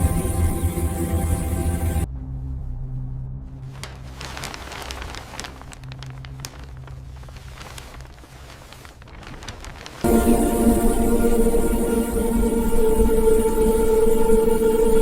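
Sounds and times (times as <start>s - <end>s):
loud music with sustained tones: 0.0s - 2.1s, 10.0s - 15.0s
steady low hum: 0.0s - 4.0s
light clicks and crackles: 3.7s - 10.1s.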